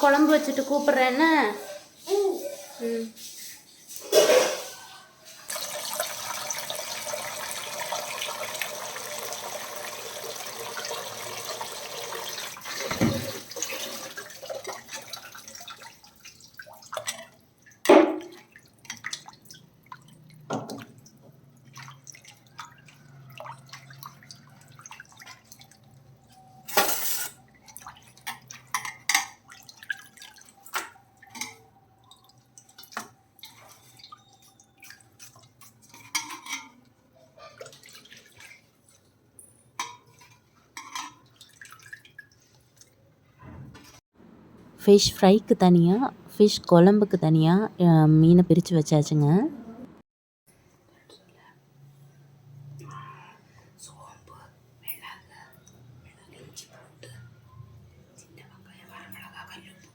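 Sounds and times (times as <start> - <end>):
dishes and utensils clinking: 1.6 - 5.5, 26.3 - 27.4, 28.2 - 29.5, 35.2 - 37.9, 39.4 - 41.4
kitchen tap running into sink: 5.5 - 17.2.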